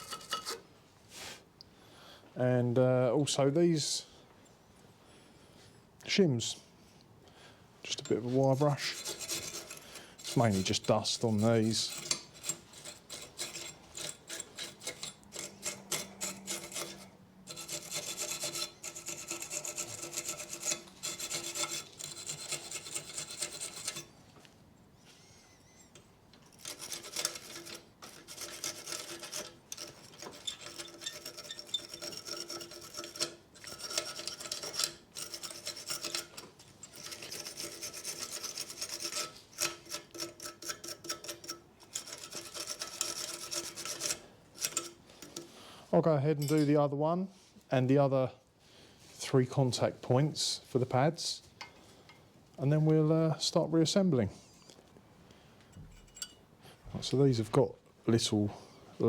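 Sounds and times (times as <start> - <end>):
wire brush scrubbing metal: 0.0 - 0.6, 7.9 - 24.1, 26.5 - 45.5.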